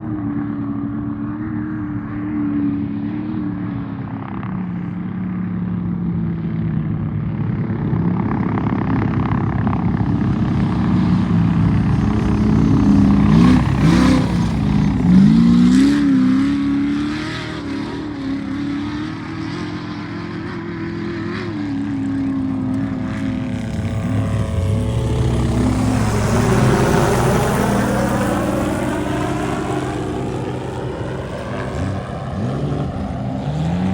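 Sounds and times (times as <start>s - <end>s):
race truck engines revving: 10.6s - 33.9s
vehicle passing by: 10.7s - 33.9s.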